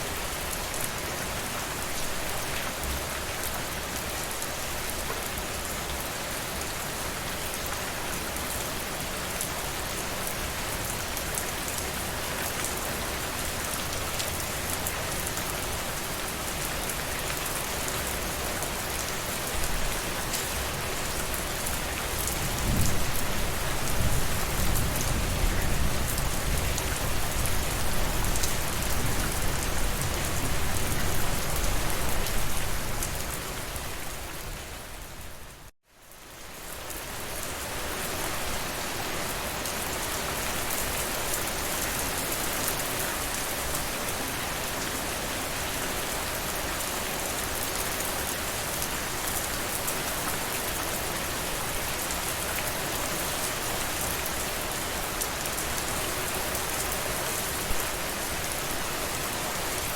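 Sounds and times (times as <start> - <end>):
rain pattering: 0.0 - 35.3.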